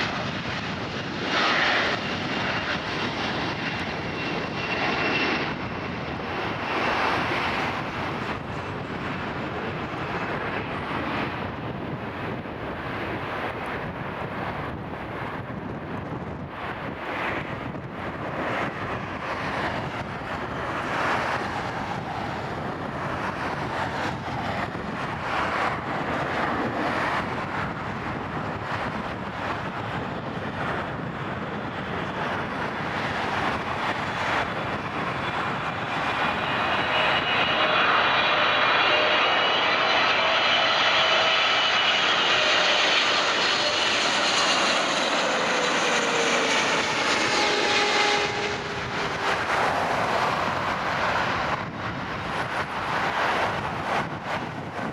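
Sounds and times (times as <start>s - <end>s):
jet airliner approaching: 0.0s - 54.9s
wind buffeting microphone: 0.0s - 54.9s
high engine whine: 30.6s - 54.6s.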